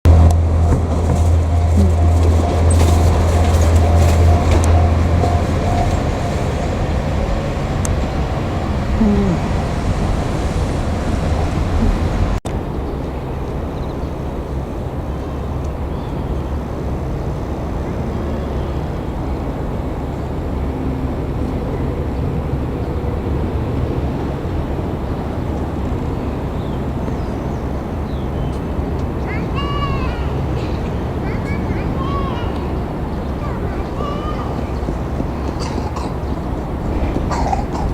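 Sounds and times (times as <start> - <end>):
diesel engine hum: 0.0 - 37.9
wheel and rail rumble: 0.0 - 37.9
level crossing bell ringing: 1.3 - 7.1.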